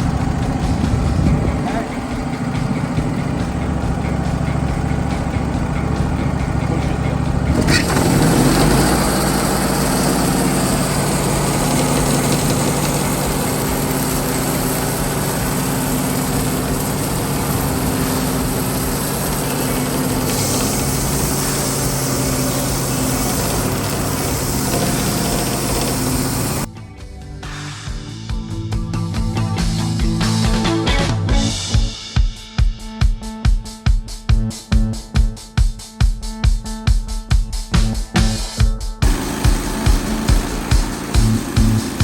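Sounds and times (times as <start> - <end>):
small engine running: 0.0 - 26.7, 39.0 - 42.0
even hissing noise: 10.3 - 26.7.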